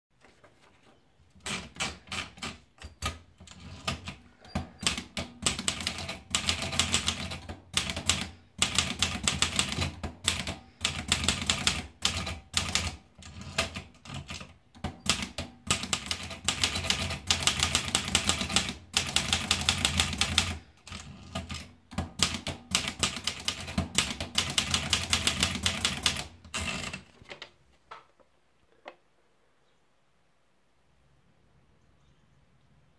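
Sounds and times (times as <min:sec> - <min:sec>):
manual typewriter typing: 0:01.3 - 0:27.2.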